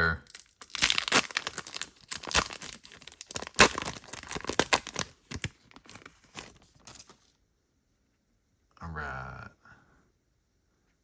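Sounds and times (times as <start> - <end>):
foil wrapper tearing and crinkling: 0.3 - 7.2.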